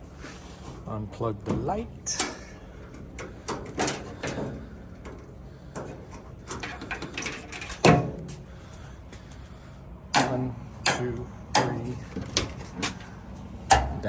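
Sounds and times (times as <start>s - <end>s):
metal parts clattering: 1.5s - 8.5s, 10.2s - 13.7s.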